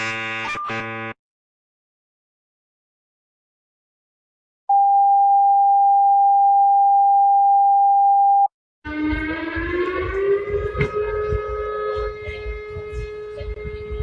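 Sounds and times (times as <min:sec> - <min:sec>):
emergency alert alarm tone: 0:00.0 - 0:01.2, 0:05.8 - 0:14.0
siren rising in pitch: 0:08.9 - 0:14.0.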